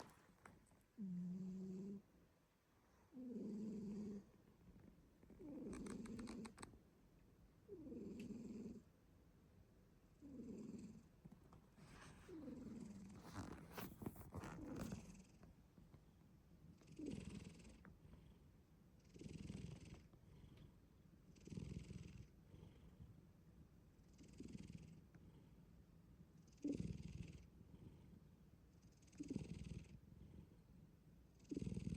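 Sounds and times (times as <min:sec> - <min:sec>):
cat snoring: 0:01.0 - 0:02.0, 0:03.1 - 0:04.3, 0:05.4 - 0:06.6, 0:07.7 - 0:08.9, 0:10.2 - 0:11.1, 0:11.8 - 0:15.4, 0:16.8 - 0:20.7, 0:21.3 - 0:23.1, 0:24.0 - 0:25.5, 0:26.4 - 0:28.2, 0:28.8 - 0:30.6, 0:31.3 - 0:31.9.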